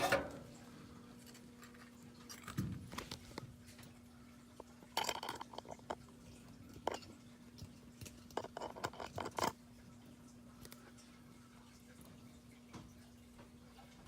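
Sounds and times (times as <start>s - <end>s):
faint steady hum: 0.0s - 14.0s
metal parts clicking and scraping: 5.0s - 6.0s.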